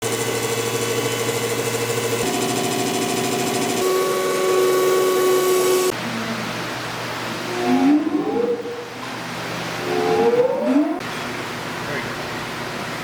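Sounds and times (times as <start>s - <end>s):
hydraulic pump whining: 0.0s - 5.9s.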